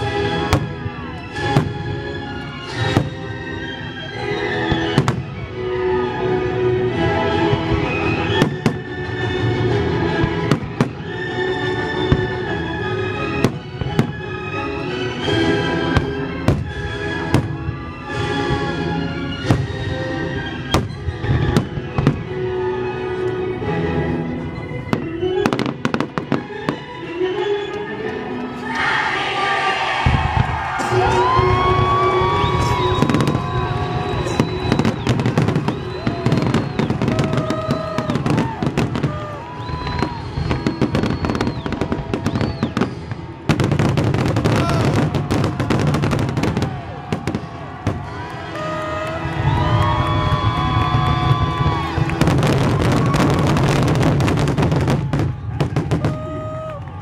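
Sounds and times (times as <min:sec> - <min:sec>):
fireworks bursting: 0:00.0 - 0:05.6, 0:07.3 - 0:12.6, 0:30.0 - 0:57.0
orchestral music: 0:00.0 - 0:57.0.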